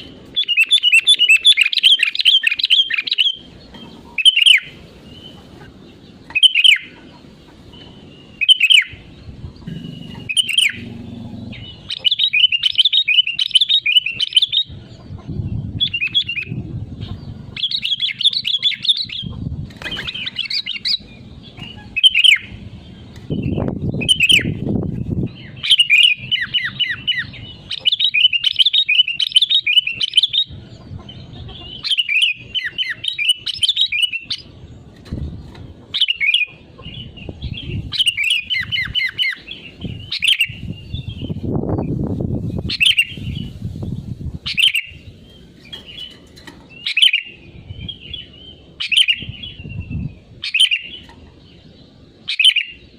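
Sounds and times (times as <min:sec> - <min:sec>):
bulbul singing: 0:00.0 - 0:52.9.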